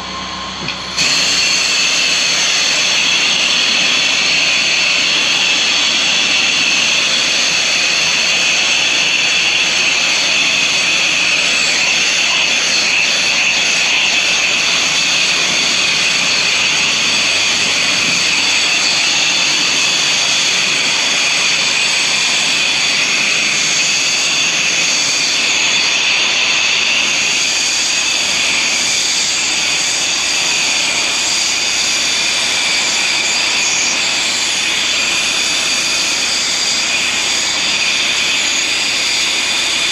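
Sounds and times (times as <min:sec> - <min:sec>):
pressure washer spraying: 0:01.0 - 0:23.3.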